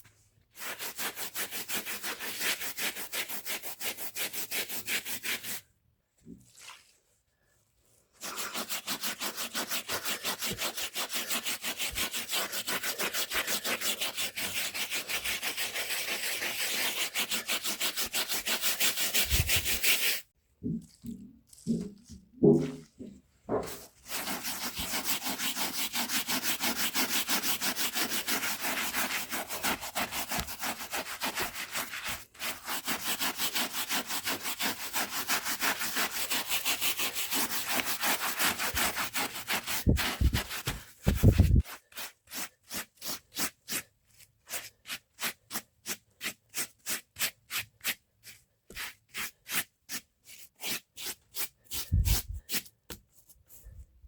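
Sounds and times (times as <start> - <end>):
brush scrubbing a rug: 0.0 - 5.6, 6.5 - 7.0, 8.1 - 20.3, 20.9 - 52.6
dull thumps: 20.6 - 23.9.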